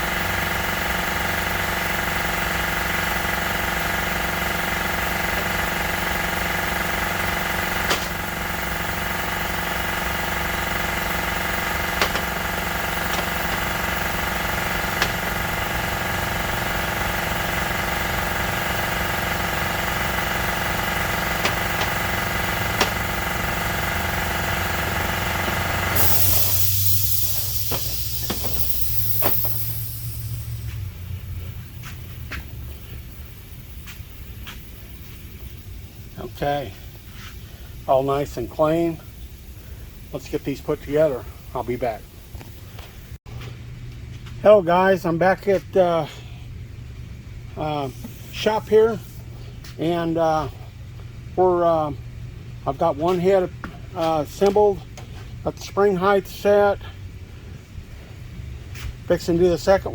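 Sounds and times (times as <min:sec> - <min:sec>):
electric motor humming: 0:05.0 - 0:30.8
air hissing: 0:05.1 - 0:42.8, 0:47.6 - 0:49.6
sharp knocks: 0:12.0 - 0:12.4.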